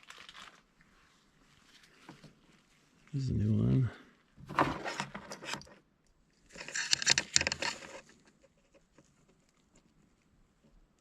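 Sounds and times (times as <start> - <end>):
handling clicks and rustling: 4.4 - 5.8.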